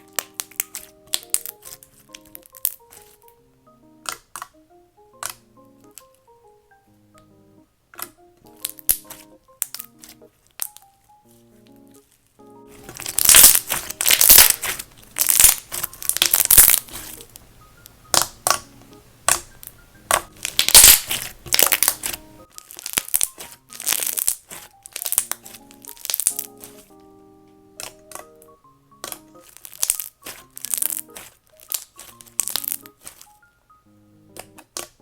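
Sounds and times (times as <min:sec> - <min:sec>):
slime squelching and popping: 0:00.0 - 0:03.3, 0:12.8 - 0:17.4, 0:18.1 - 0:26.9, 0:29.0 - 0:33.4
soft background music: 0:00.0 - 0:35.0.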